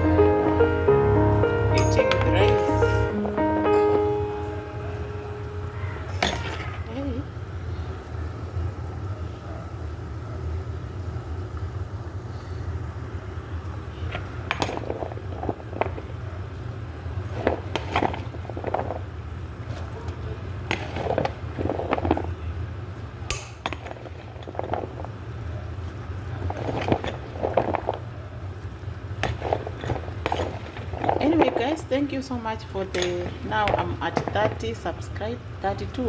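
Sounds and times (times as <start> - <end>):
pots and utensils clattering: 32.8 - 35.0.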